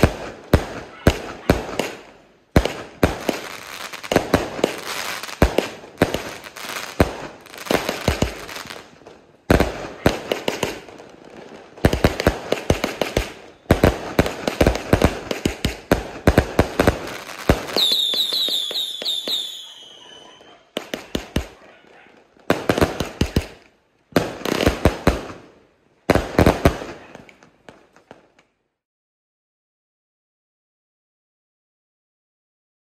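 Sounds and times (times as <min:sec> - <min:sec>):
firework crackling: 0:00.0 - 0:25.5
firework volleys of sharp bangs: 0:00.0 - 0:28.4
falling firework whistles: 0:17.5 - 0:20.6.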